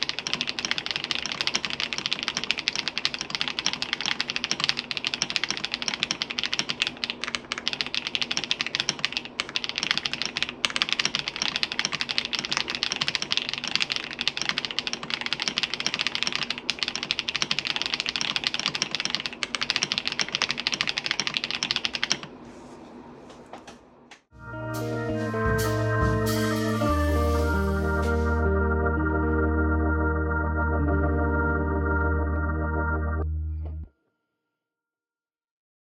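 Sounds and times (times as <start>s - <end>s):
fast mechanical keyboard typing: 0.0s - 22.3s.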